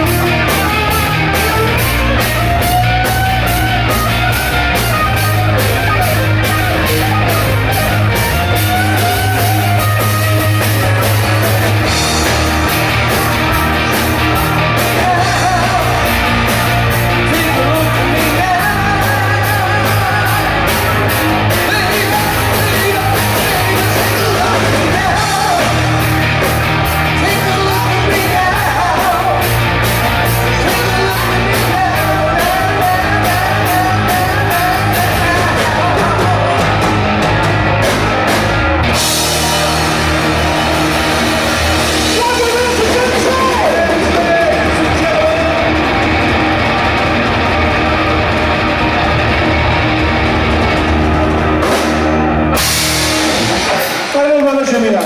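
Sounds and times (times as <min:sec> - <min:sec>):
rock band playing: 0:00.0 - 0:55.0
steady drum beat: 0:00.0 - 0:55.0
person singing: 0:08.4 - 0:37.7, 0:38.9 - 0:47.0.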